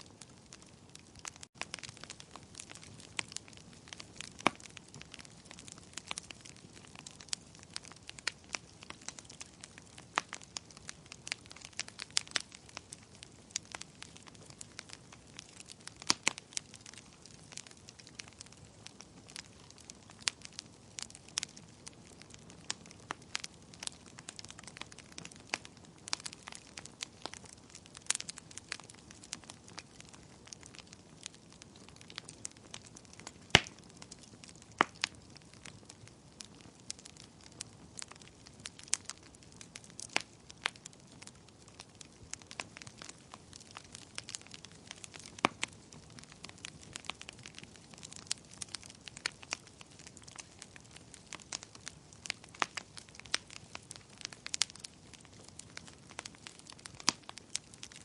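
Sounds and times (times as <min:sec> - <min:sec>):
fire crackling and popping: 0:00.0 - 0:58.0.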